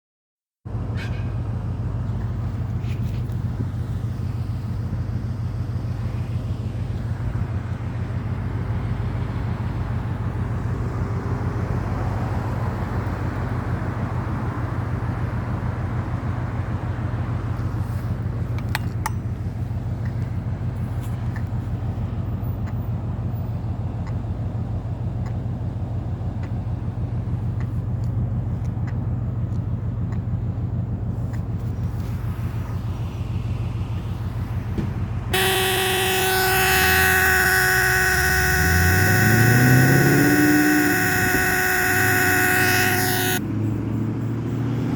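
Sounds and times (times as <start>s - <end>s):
road traffic: 0.7s - 44.9s
low buzzing hum: 35.3s - 43.4s.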